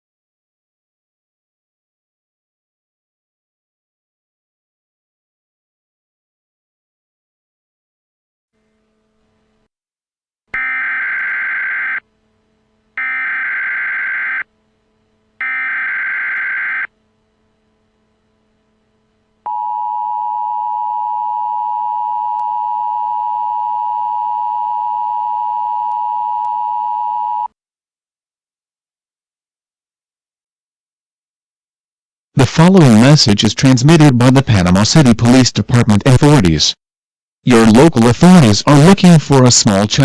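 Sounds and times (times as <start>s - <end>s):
screeching data bursts: 10.6s - 12.0s, 13.0s - 14.5s, 15.4s - 16.9s
two-tone attention signal: 10.6s - 12.0s, 13.0s - 14.5s, 15.4s - 16.9s.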